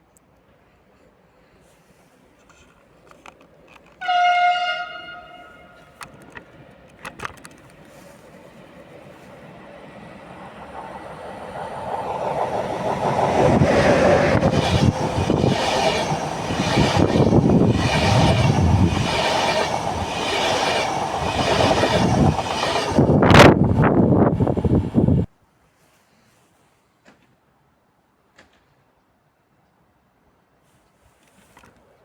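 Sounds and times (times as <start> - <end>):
train passing: 3.2 - 25.3
train wheel clatter: 5.9 - 9.0, 10.6 - 24.8.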